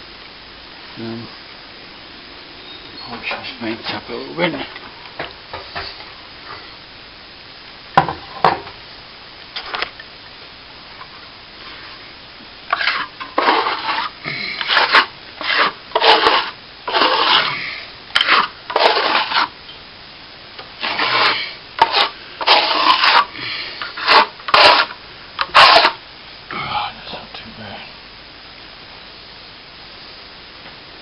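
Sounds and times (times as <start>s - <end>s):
sandpaper rasping on cement: 12.7s - 17.6s, 18.2s - 19.5s, 20.8s - 26.0s.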